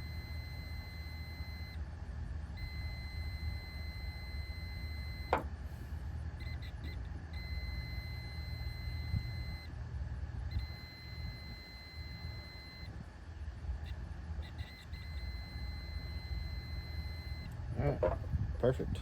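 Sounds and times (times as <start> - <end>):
multimeter continuity beeps: 0.0 - 1.9, 2.5 - 5.5, 6.4 - 9.7, 10.5 - 13.0, 13.8 - 18.2.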